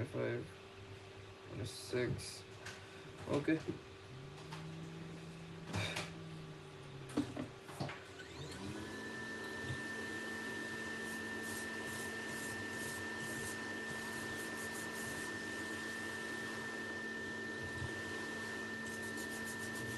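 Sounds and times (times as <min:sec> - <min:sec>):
electric blower running: 0:04.0 - 0:19.9.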